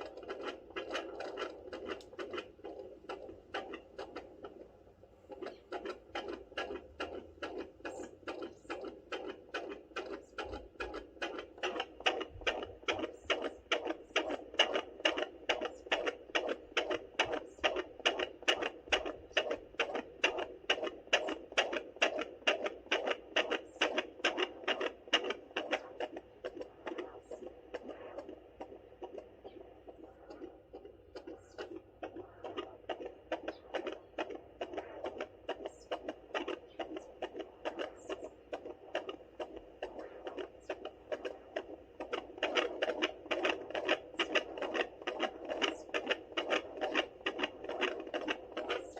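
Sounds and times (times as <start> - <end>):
fetal heartbeat through doppler: 0.0 - 48.9.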